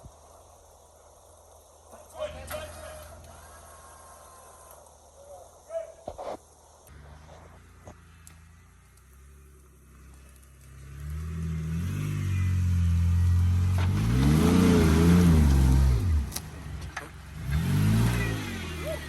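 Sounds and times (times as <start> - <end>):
engine revving under load: 6.9 - 19.0.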